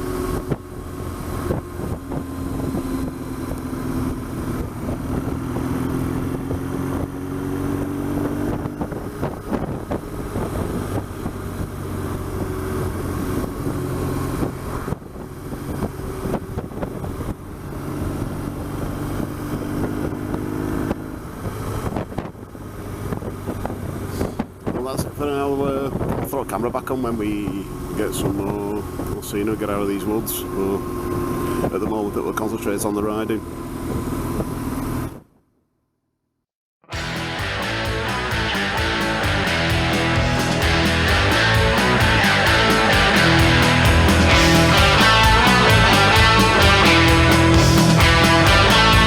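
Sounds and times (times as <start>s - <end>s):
motorcycle engine running: 0.0s - 24.8s, 36.9s - 49.0s.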